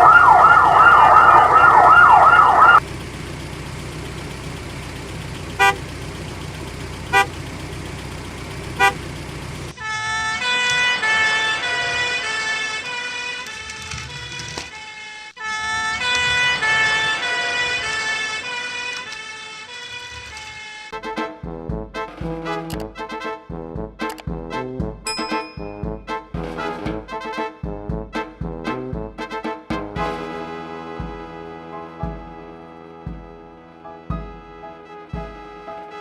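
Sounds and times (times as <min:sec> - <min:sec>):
toy electronic siren wailing: 0:00.0 - 0:02.8
short beeps: 0:25.1 - 0:26.0
melody of high notes: 0:25.1 - 0:26.2.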